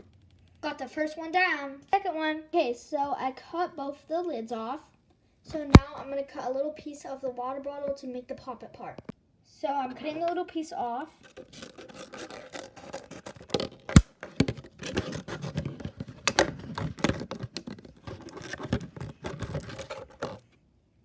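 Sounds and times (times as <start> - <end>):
sharp plastic snap: 5.6 - 5.8, 13.9 - 14.1
scissors snipping plastic: 11.2 - 20.4.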